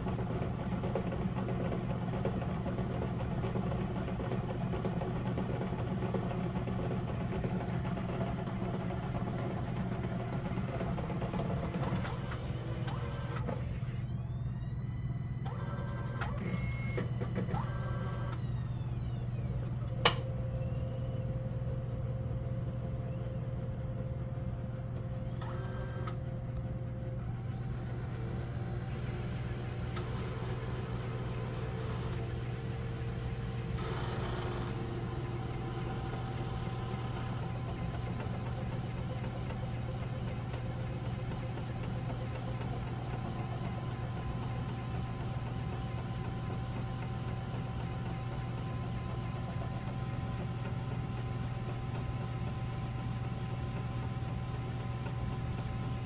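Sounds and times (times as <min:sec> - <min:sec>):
machine droning: 0:12.0 - 0:56.0.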